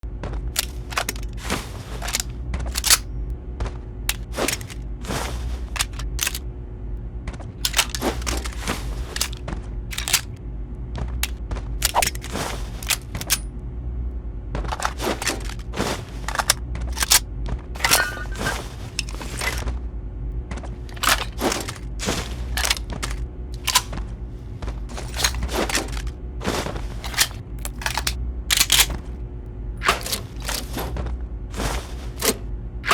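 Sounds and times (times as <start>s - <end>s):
steady low hum: 0.0s - 32.9s
gun reload metallic clicks: 0.6s - 1.4s, 2.0s - 3.0s, 4.1s - 4.8s, 5.7s - 6.4s, 7.6s - 10.3s, 11.2s - 13.5s, 14.7s - 17.2s, 17.8s - 19.6s, 20.9s - 23.9s, 25.0s - 26.1s, 27.0s - 29.0s, 29.8s - 30.8s, 32.1s - 32.9s.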